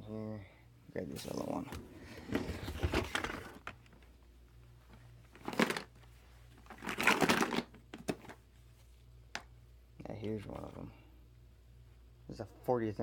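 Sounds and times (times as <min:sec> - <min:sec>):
toys rustling and clattering: 0:01.2 - 0:04.1, 0:04.9 - 0:08.4.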